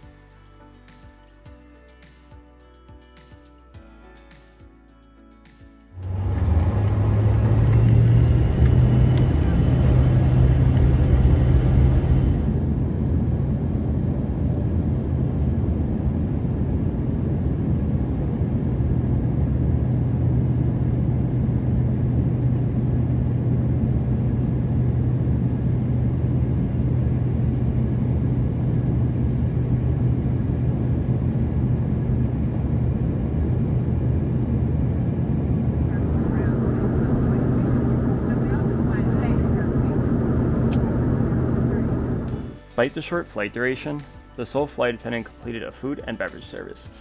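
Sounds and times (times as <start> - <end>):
jet cabin engine rush: 6.0 - 42.6
faint high whine: 6.0 - 42.9.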